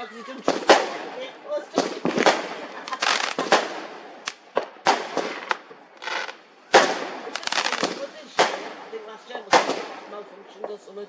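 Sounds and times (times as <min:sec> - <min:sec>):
fireworks bangs and crackle: 0:00.4 - 0:10.8.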